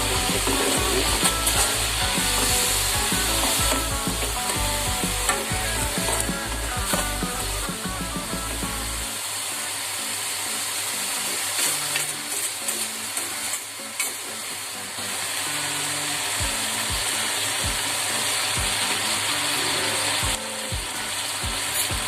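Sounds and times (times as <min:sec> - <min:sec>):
water boiling in a pan: 0:00.0 - 0:07.3
sizzling hiss: 0:00.0 - 0:22.0.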